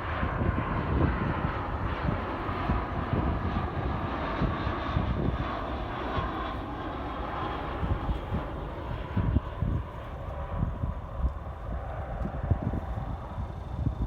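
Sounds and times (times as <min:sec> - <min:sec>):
jet airliner engines: 0:00.0 - 0:14.0
wind gusting on microphone: 0:00.0 - 0:14.0.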